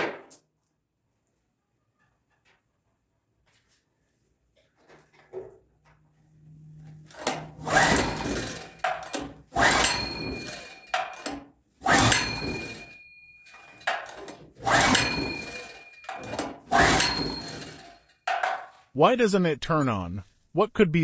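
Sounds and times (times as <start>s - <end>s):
generator recoil rope pulls: 6.9s - 18.8s.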